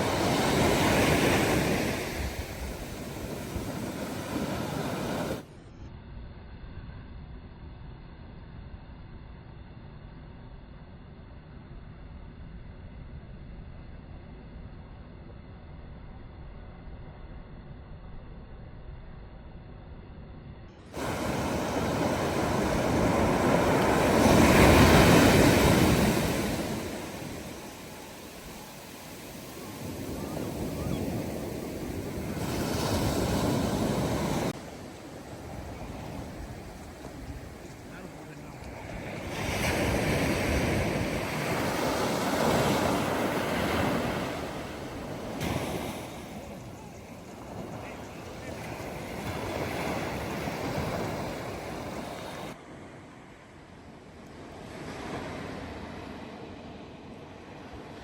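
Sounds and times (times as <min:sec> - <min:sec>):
wave rushing in: 0:00.0 - 0:05.6, 0:20.8 - 0:52.6.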